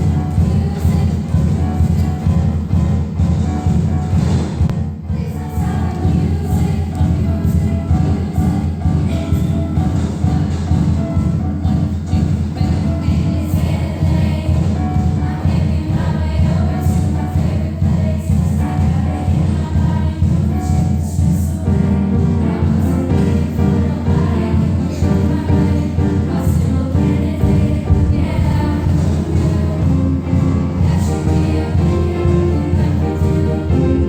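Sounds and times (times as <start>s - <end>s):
choir singing with instruments: 0.0s - 34.0s
heavy bass: 27.4s - 31.0s.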